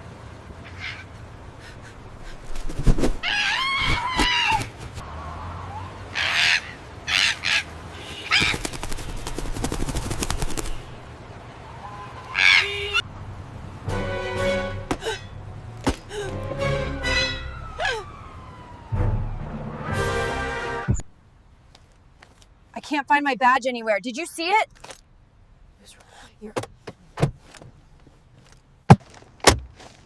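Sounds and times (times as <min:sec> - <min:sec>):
parrot squawking: 0:06.2 - 0:08.6, 0:12.3 - 0:13.0
rapid clicks: 0:08.3 - 0:10.8.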